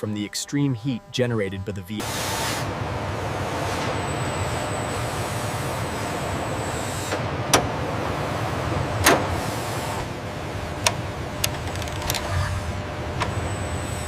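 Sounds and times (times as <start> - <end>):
low mechanical hum: 0.0 - 14.0
sharp clicks and knocks: 10.8 - 12.5.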